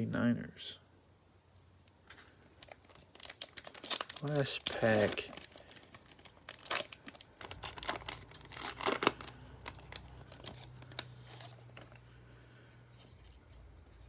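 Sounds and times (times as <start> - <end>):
faint low hum: 0.0 - 14.0
plastic wrapper tearing and crinkling: 2.0 - 12.2
cards being handled: 6.6 - 12.1.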